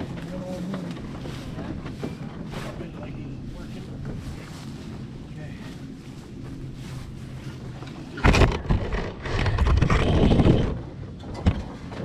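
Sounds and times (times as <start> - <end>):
scraping: 6.6 - 10.8.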